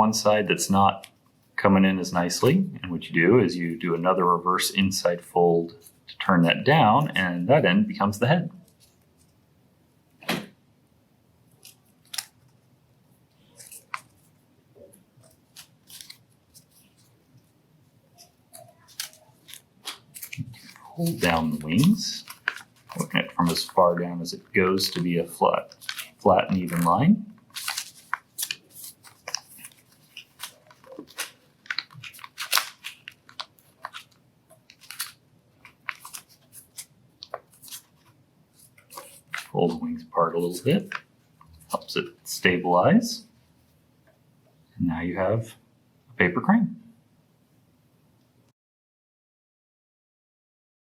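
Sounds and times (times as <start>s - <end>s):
paper being folded and creased: 11.5s - 12.6s, 13.3s - 42.3s.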